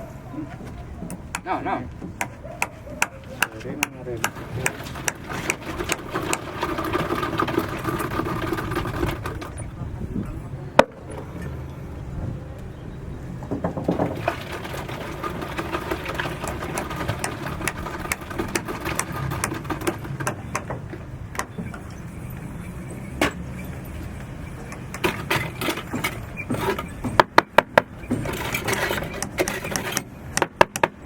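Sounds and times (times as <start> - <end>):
sharp knocks and taps: 1.0 - 7.1, 16.3 - 21.8, 29.2 - 31.0
machine rumbling: 4.0 - 31.0.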